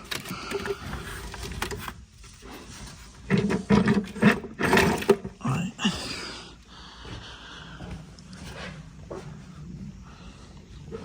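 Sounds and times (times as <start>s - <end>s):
grunts of effort: 5.4s - 6.5s.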